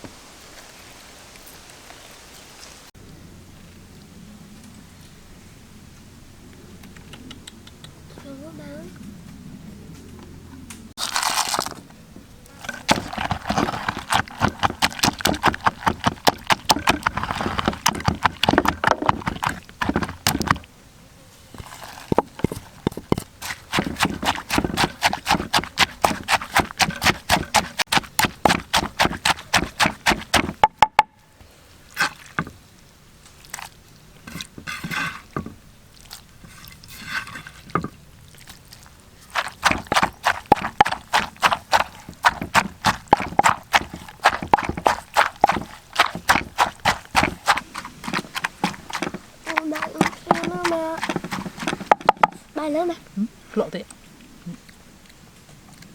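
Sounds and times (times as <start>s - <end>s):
wet chewing and smacking: 12.5s - 20.7s, 21.6s - 30.8s, 33.2s - 34.6s, 35.9s - 36.8s, 37.6s - 52.5s.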